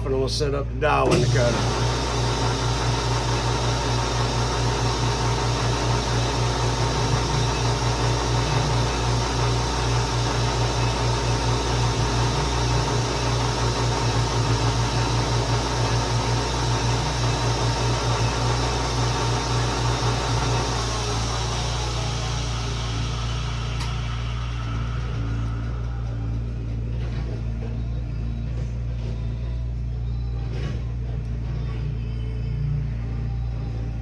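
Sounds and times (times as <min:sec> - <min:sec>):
low fluttering hum: 0:00.0 - 0:34.0
metal lathe running: 0:00.9 - 0:26.8.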